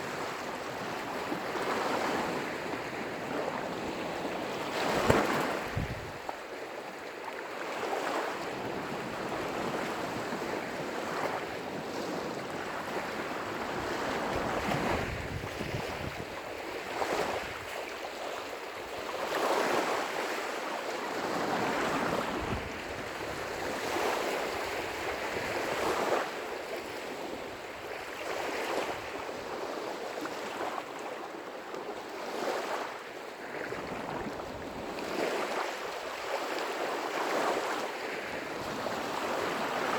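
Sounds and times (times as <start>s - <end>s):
wind rumbling on microphone: 0.0s - 6.3s, 8.6s - 17.9s
lake waves washing on shore: 0.0s - 39.9s.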